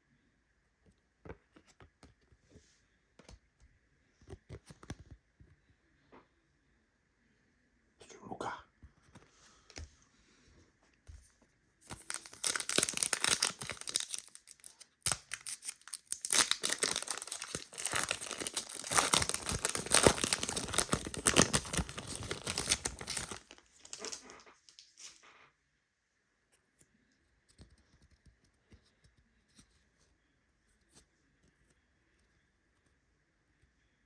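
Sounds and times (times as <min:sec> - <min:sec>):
foil wrapper tearing and crinkling: 0:11.8 - 0:24.3.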